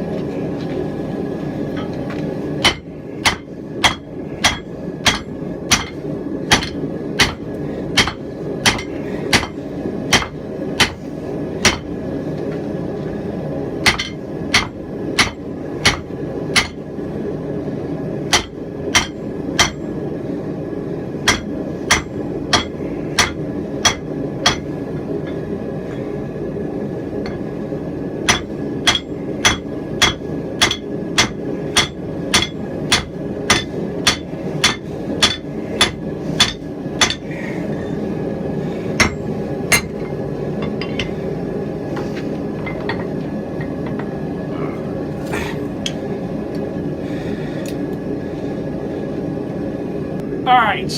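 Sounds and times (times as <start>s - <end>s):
hammer striking steel on anvil: 2.6s - 11.0s, 11.6s - 11.9s, 13.8s - 16.8s, 18.3s - 19.9s, 21.2s - 24.7s, 28.2s - 37.2s, 39.0s - 41.1s.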